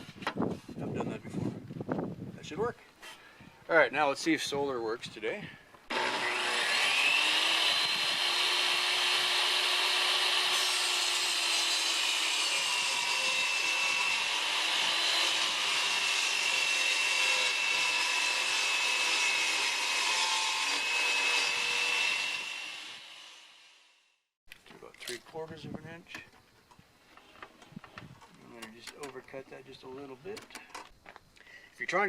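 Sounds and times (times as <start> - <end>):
electric power saw whining: 5.9 - 23.5.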